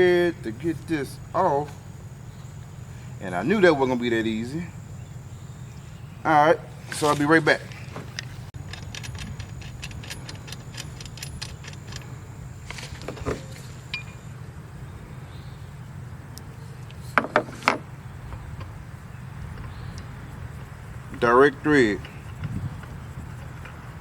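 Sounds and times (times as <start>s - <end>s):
steady low hum: 0.0s - 24.0s
metallic ticking and clinking: 8.6s - 12.2s.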